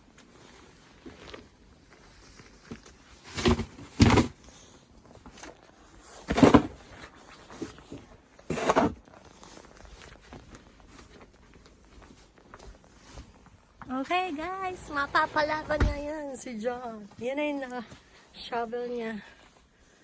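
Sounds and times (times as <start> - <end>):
snow shovel scraping snow: 8.4 - 9.0, 14.2 - 15.8.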